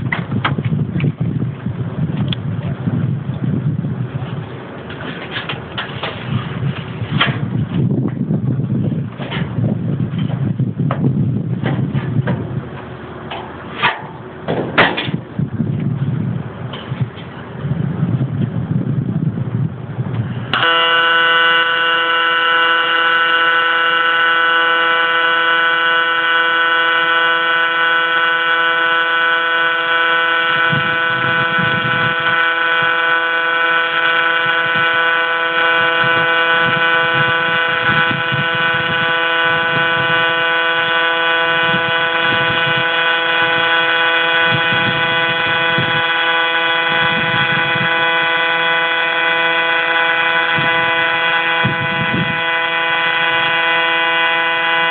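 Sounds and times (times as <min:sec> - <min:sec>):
welding arc buzzing: 0:20.4 - 0:54.9.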